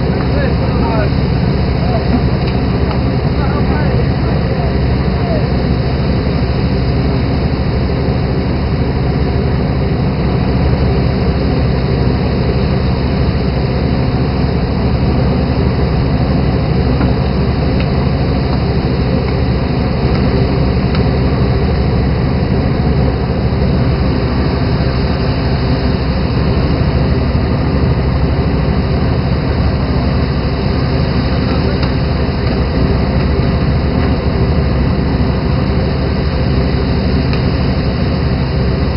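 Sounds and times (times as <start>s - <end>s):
boat engine running: 0.0s - 38.9s.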